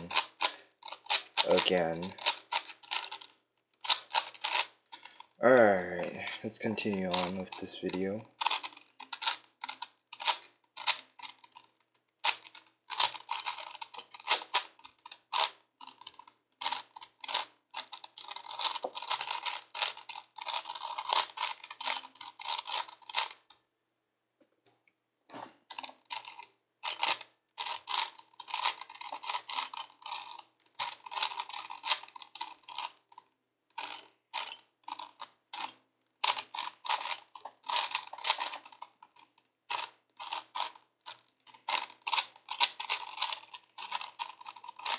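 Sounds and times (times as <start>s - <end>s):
puzzle cube plastic clicking: 0.0s - 5.4s, 6.6s - 23.6s, 25.7s - 44.9s.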